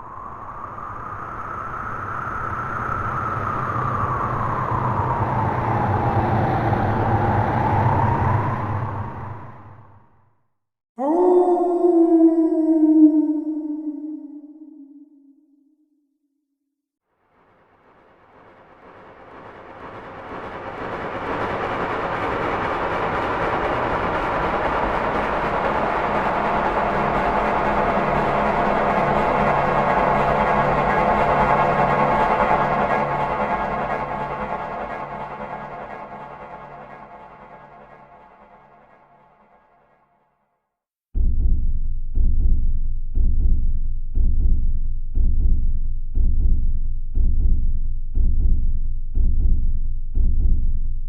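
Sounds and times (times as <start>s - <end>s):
hollow rushing noise sinking in pitch: 0.0s - 10.2s, 17.2s - 39.6s
low hum: 11.0s - 15.6s, 17.3s - 39.2s.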